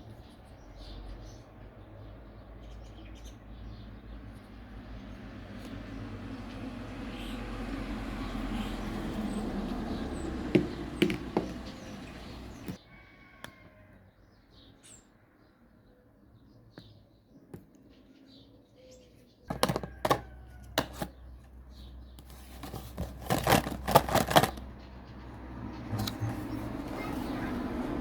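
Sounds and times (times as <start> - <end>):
handling clicks and knocks: 10.4 - 12.8, 19.5 - 21.1, 22.5 - 24.7.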